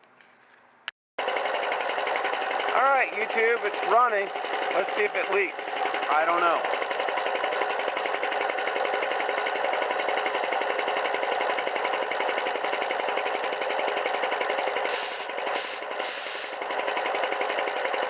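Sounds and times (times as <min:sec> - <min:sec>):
air compressor pump pulsing: 0:01.2 - 0:18.0
short bursts of hiss: 0:14.9 - 0:16.6.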